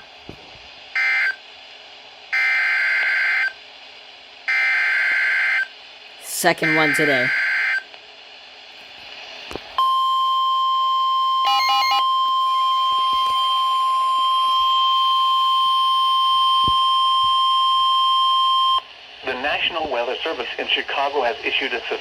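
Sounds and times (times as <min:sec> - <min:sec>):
loud steady warning tone: 0:00.9 - 0:01.5, 0:02.3 - 0:03.6, 0:04.5 - 0:07.9, 0:09.8 - 0:18.9.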